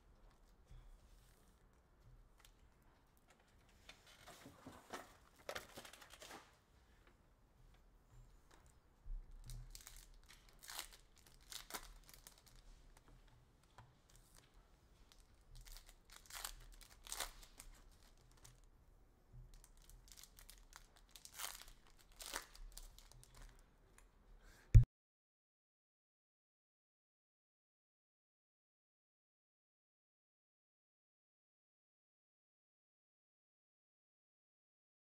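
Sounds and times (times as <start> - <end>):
card pack wrappers tearing and crinkling: 9.6 - 12.6, 15.6 - 18.6, 19.6 - 23.5.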